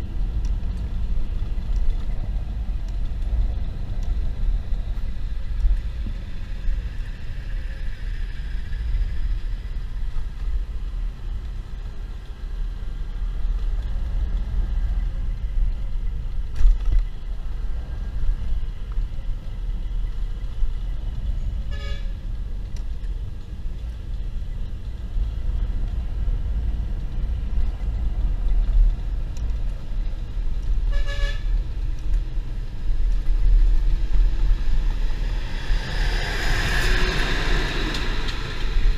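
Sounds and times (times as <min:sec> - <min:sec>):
motorcycle road rumble: 0:00.0 - 0:38.9
wind on microphone: 0:00.0 - 0:38.9
vehicle horn toots: 0:21.7 - 0:22.2, 0:30.9 - 0:31.6.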